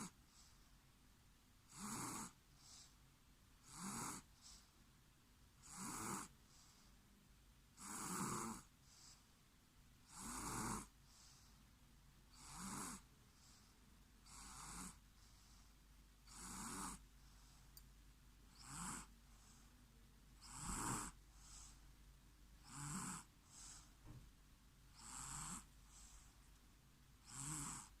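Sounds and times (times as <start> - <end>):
person snoring faintly: 1.7 - 2.9, 3.6 - 4.6, 5.6 - 6.3, 7.8 - 8.7, 10.0 - 11.5, 12.3 - 13.6, 14.2 - 15.6, 16.2 - 17.0, 18.5 - 19.6, 20.4 - 21.8, 22.6 - 23.9, 24.9 - 26.3, 27.2 - 28.0.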